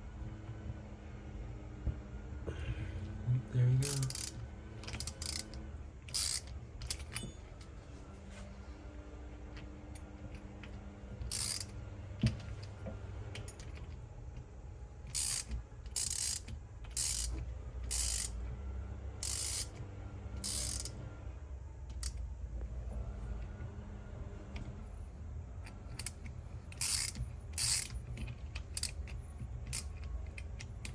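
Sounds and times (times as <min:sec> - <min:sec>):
steady low hum: 0:00.0 - 0:30.9
ratchet wrench ratcheting: 0:03.8 - 0:07.4, 0:11.2 - 0:11.8, 0:15.0 - 0:18.4, 0:19.2 - 0:19.8, 0:20.4 - 0:21.0, 0:25.6 - 0:30.9.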